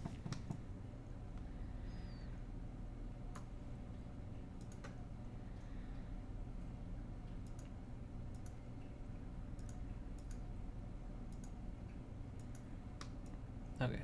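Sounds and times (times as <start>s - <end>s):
computer mouse clicking: 0.0s - 0.6s, 3.3s - 3.5s, 4.6s - 5.0s, 7.4s - 8.6s, 9.6s - 10.5s, 11.3s - 11.6s, 12.4s - 13.4s
low room hum: 0.0s - 14.0s.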